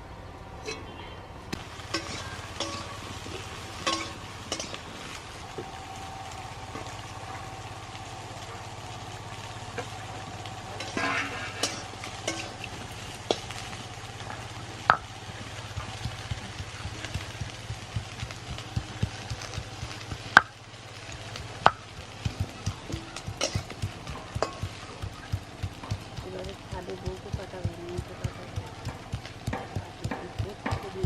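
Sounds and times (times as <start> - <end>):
food frying in a pan: 1.5 - 31.0
utensil scraping against pan: 10.8 - 13.7.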